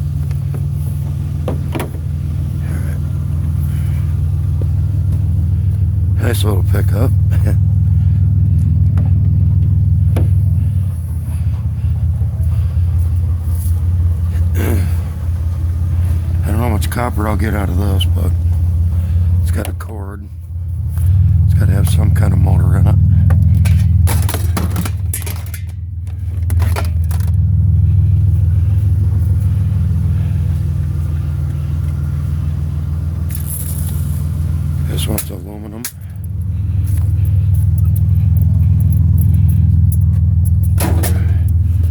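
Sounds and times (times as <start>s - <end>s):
knocks and clatters: 0.0s - 2.6s, 8.5s - 10.8s, 23.1s - 27.8s, 35.9s - 41.9s
vehicle engine and road rumble: 0.0s - 41.9s.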